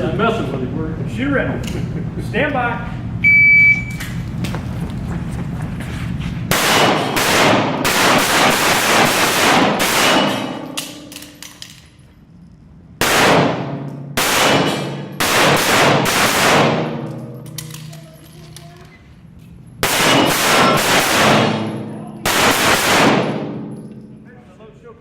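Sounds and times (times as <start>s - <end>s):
pistol shots: 6.5s - 11.6s, 13.0s - 17.8s, 19.8s - 23.7s.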